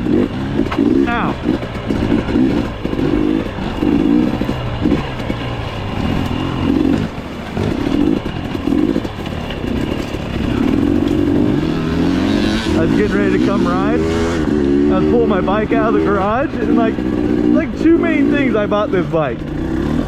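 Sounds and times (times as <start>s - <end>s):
dirt bike engine revving: 0.0s - 20.0s.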